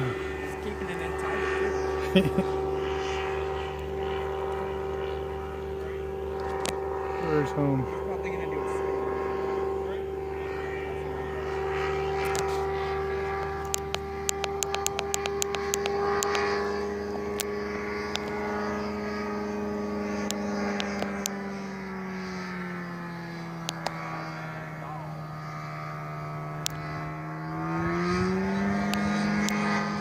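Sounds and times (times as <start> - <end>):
model airplane engine droning: 0.0 - 30.0
sharp clicks: 13.4 - 16.5, 20.2 - 21.4, 23.6 - 24.0, 26.6 - 26.9, 28.8 - 29.6.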